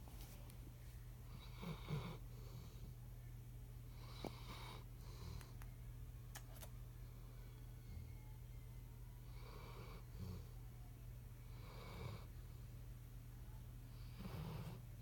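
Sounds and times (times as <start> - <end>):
steady low hum: 0.0 - 15.0
dog snoring: 1.3 - 2.9, 3.9 - 5.4, 9.3 - 10.5, 11.5 - 12.3, 13.9 - 14.8.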